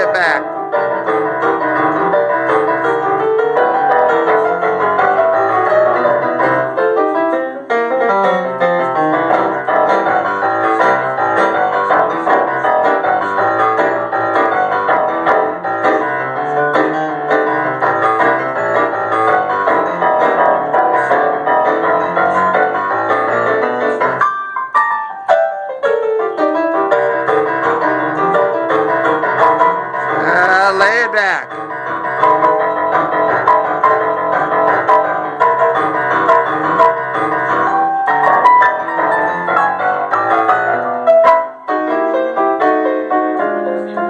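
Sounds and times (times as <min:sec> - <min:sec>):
boogie-woogie piano: 0:00.0 - 0:44.0.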